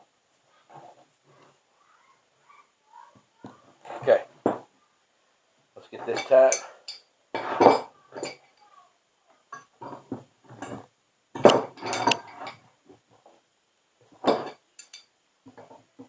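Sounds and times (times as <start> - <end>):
metal clinks and scrapes of tools: 14.3 - 15.1.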